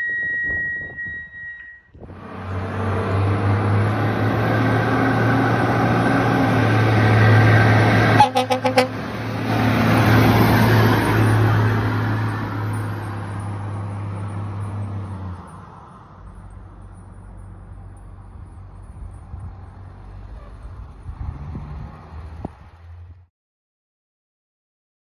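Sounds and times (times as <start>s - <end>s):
diesel truck engine running: 0.0s - 23.2s
truck horn blasts: 4.9s - 9.6s.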